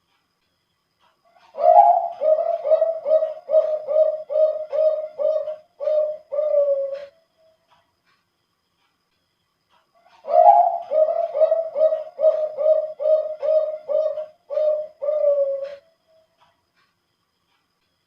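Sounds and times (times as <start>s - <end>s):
dove cooing: 1.4s - 7.2s, 10.1s - 15.9s.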